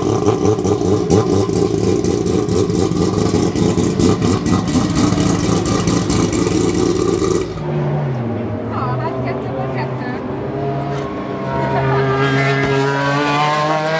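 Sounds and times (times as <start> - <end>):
racing car engine idling: 0.0 - 7.6.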